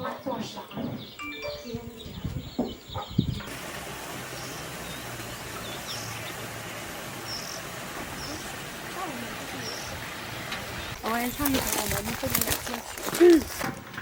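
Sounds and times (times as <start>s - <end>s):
bird chirping: 0.0s - 3.5s, 4.3s - 6.5s, 7.2s - 8.5s, 9.4s - 12.7s
stream water flowing: 3.5s - 13.6s.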